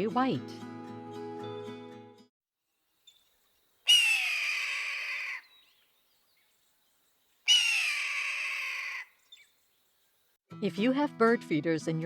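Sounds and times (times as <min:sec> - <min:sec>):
hawk screaming: 0:03.9 - 0:05.5, 0:07.5 - 0:09.1.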